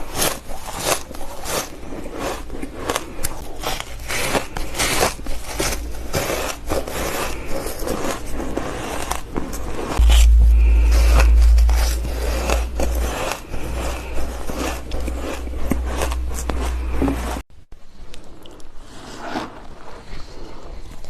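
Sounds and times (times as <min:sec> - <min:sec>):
deep low rumble: 0:05.4 - 0:07.4, 0:10.0 - 0:17.4.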